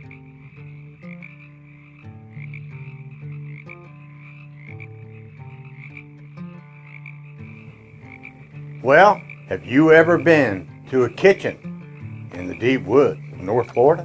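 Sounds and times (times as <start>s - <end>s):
frogs croaking: 0.0s - 14.0s
high pulsing frog chorus: 0.0s - 14.0s.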